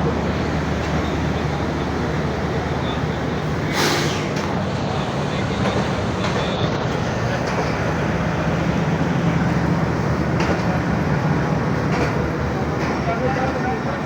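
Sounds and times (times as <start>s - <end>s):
train rumbling on rails: 0.0s - 14.0s.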